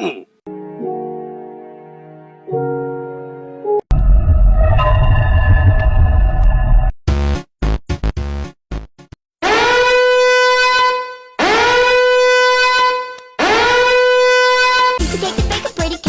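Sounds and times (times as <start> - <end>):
loud horn blasts: 9.4 - 15.0
rhythmic music: 15.0 - 16.0.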